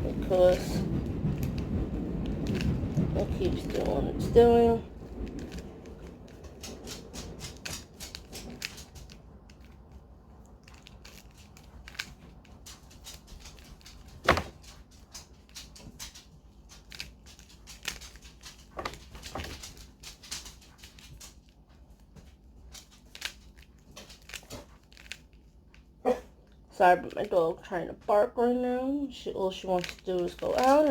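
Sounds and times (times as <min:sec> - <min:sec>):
plastic puzzle cube clicking: 0:05.3 - 0:09.8, 0:10.6 - 0:14.6, 0:22.7 - 0:25.8, 0:29.8 - 0:30.9.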